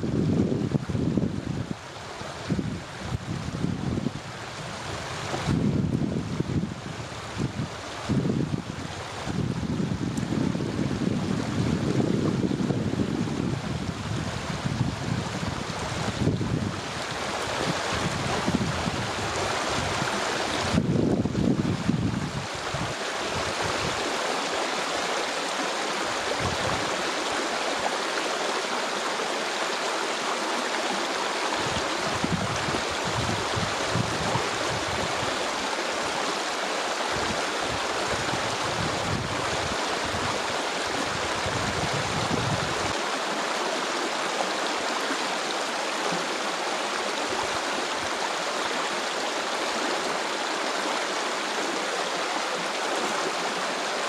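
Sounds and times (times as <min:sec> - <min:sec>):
wind rumbling on microphone: 0:00.0 - 0:25.0, 0:25.9 - 0:28.0, 0:30.8 - 0:36.3, 0:37.0 - 0:43.1
stream water rushing: 0:00.0 - 0:54.0.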